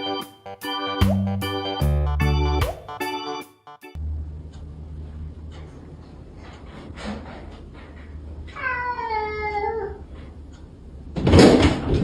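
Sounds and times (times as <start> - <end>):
low steady hum: 4.0 - 7.0
cat meowing: 8.5 - 10.1.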